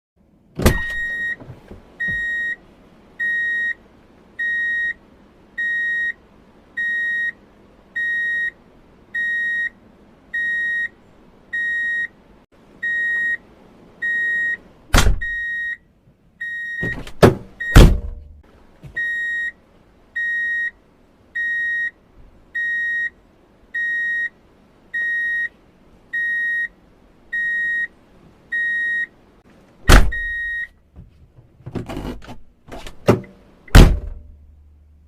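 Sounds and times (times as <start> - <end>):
vehicle reversing alarm beeping: 0.7 - 1.4, 2.0 - 2.6, 3.2 - 3.8, 4.4 - 5.0, 5.6 - 6.2, 6.8 - 7.4, 8.0 - 12.2, 12.8 - 13.4, 14.0 - 14.6, 15.2 - 17.0, 17.6 - 17.8, 19.0 - 19.6, 20.2 - 20.8, 21.4 - 22.0, 22.6 - 29.1, 30.1 - 30.8.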